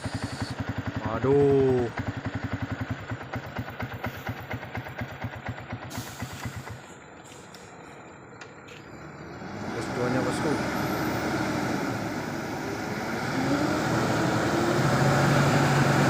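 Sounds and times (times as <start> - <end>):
diesel truck engine idling: 0.0 - 16.0.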